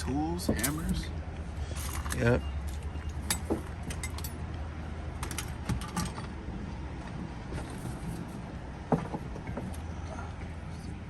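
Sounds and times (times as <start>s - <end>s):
metal tools clinking and clattering: 0.4s - 1.1s, 1.7s - 4.4s.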